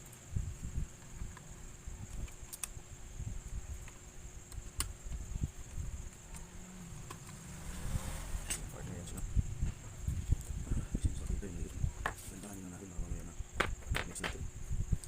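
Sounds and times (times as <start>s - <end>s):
crickets chirring: 0.0s - 15.0s
small sharp clicks: 1.0s - 2.8s, 3.8s - 7.4s.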